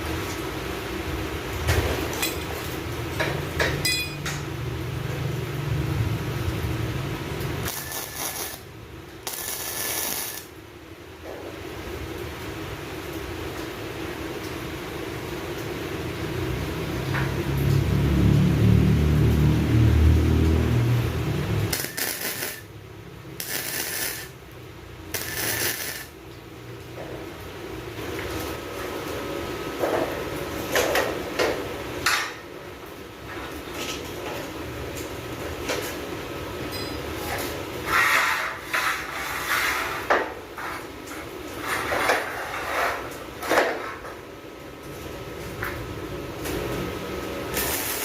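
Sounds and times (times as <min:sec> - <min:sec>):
welding arc crackling: 0:06.2 - 0:10.6, 0:20.4 - 0:26.2, 0:47.4 - 0:48.0
steel parts scraping: 0:25.2 - 0:26.1.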